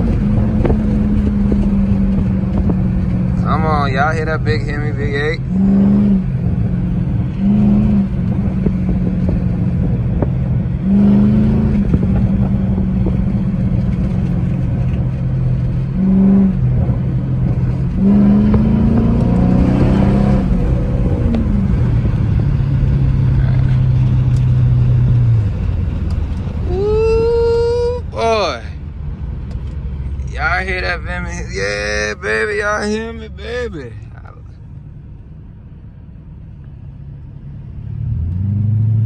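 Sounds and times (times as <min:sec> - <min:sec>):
loud vee eight engine revving: 0:00.0 - 0:25.5.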